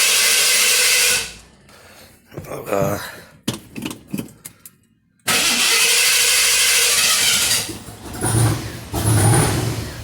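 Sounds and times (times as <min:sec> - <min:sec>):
car engine cranking and starting: 0:05.2 - 0:10.0
car engine idling: 0:05.3 - 0:10.0.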